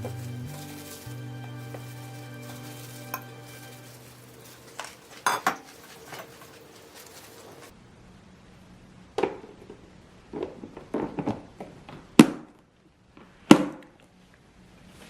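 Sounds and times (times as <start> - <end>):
kitchen utensils knocking: 4.3 - 6.8.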